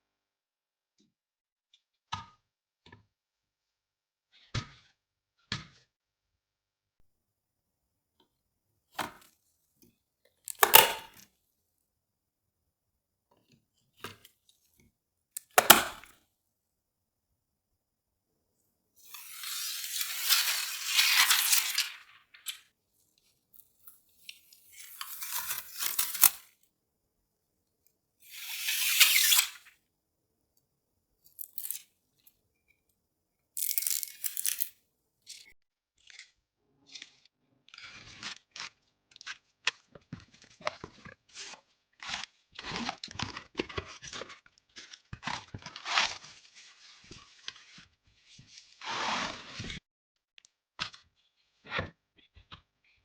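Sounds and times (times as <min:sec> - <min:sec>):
packaging being torn: 0:10.5 - 0:11.1, 0:15.4 - 0:16.0, 0:19.1 - 0:22.0, 0:25.0 - 0:26.4, 0:31.4 - 0:31.8, 0:33.6 - 0:34.7
clicks and rustles of handling: 0:10.5 - 0:11.2, 0:15.4 - 0:16.1, 0:33.6 - 0:34.7.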